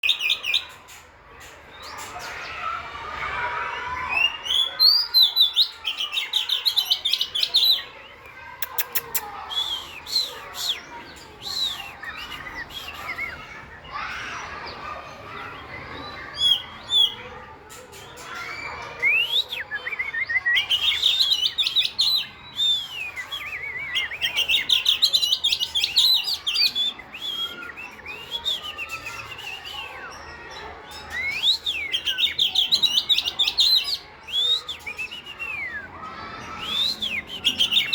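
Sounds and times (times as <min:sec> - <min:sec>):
sharp bird clicks: 0:08.6 - 0:09.7
bird singing whistles and trills: 0:09.4 - 0:14.7, 0:18.7 - 0:37.9.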